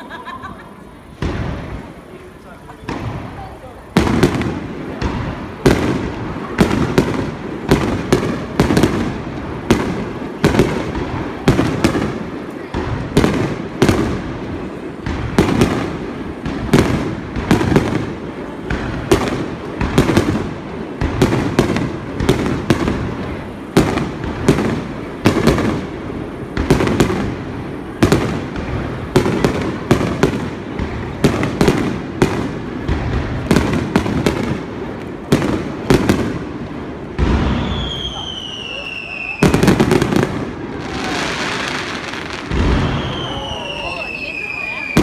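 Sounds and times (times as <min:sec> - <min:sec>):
fireworks bursting: 0:00.0 - 0:45.0.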